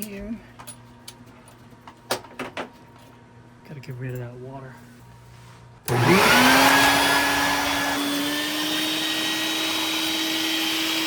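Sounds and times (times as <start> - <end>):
shop vacuum motor whining: 5.8 - 11.0.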